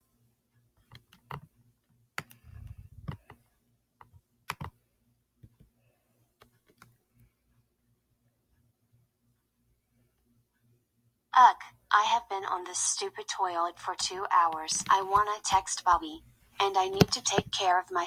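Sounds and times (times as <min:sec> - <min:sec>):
sharp clicks and taps: 0:14.4 - 0:17.7.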